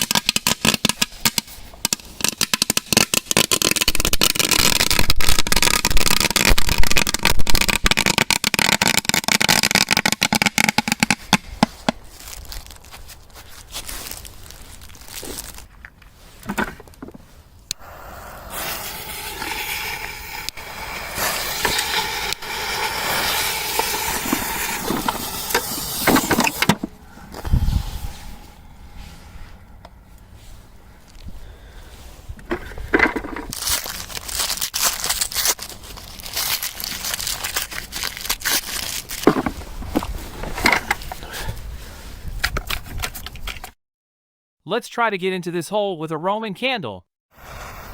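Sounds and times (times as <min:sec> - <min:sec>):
firework cracks: 0:00.0 - 0:11.6, 0:17.8 - 0:27.6
crunching and crinkling handling: 0:11.7 - 0:17.6, 0:30.2 - 0:41.4
firework hissing: 0:17.8 - 0:29.4, 0:47.4 - 0:47.9.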